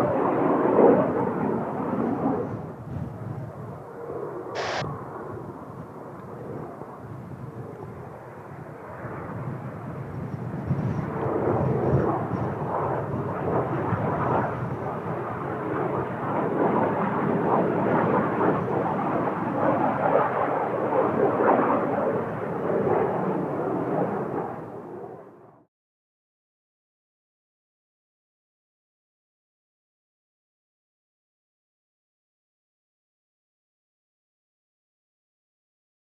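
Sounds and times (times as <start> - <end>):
jet engine roar: 0.0 - 25.6.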